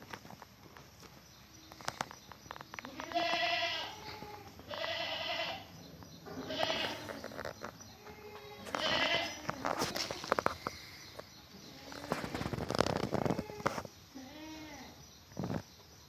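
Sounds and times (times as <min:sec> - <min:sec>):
light clicks and rustling: 0:00.0 - 0:05.0, 0:06.0 - 0:13.9
goat kids bleating: 0:02.8 - 0:10.7, 0:11.7 - 0:15.0.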